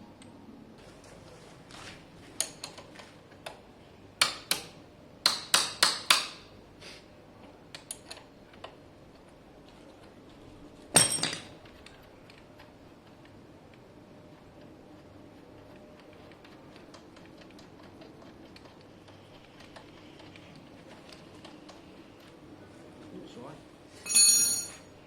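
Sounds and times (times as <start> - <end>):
metal tools clinking and knocking: 11.0 - 11.6, 24.0 - 24.9.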